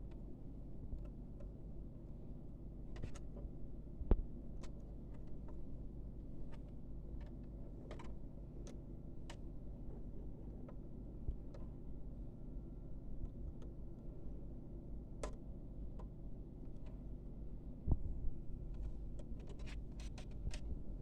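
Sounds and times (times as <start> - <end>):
low steady hum: 0.0 - 21.0
small clicks and light taps: 4.1 - 5.6, 6.4 - 9.5, 15.2 - 17.0.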